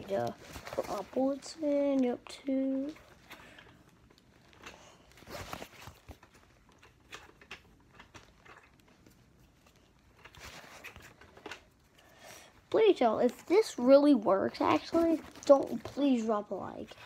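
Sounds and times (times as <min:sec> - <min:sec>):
clicks and rustles of foam darts: 0:01.9 - 0:12.0.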